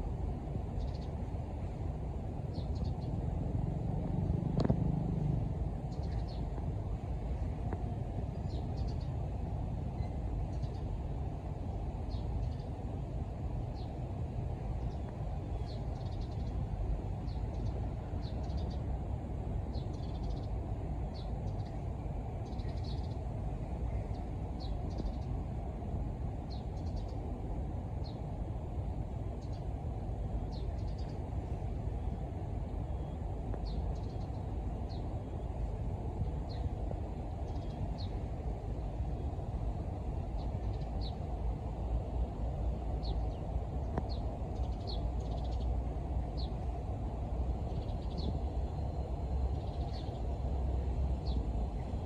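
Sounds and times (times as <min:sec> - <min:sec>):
low rumble: 0:03.3 - 0:07.7.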